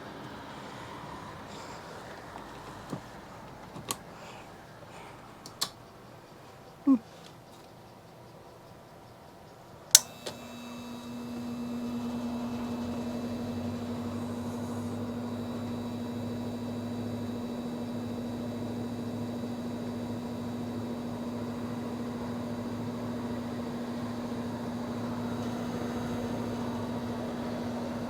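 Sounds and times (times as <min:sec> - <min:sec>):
electric fan humming and whooshing: 0:09.8 - 0:28.0.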